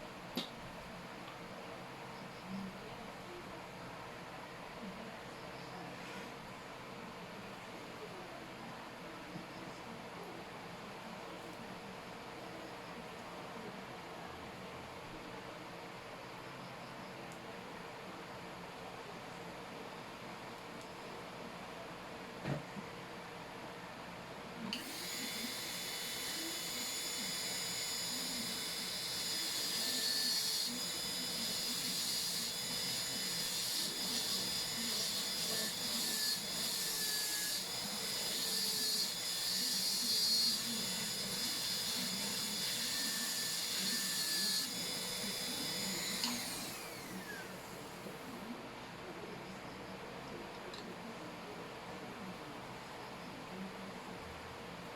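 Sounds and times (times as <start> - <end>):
dental drill whining: 24.7 - 48.3.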